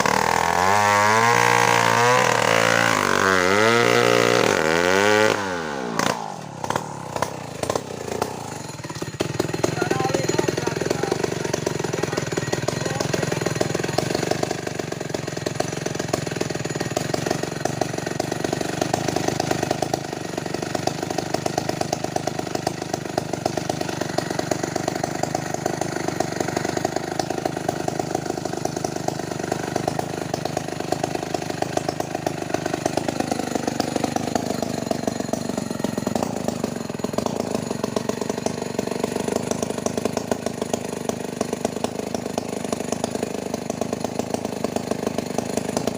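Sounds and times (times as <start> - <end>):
petrol engine running: 6.0 - 15.2.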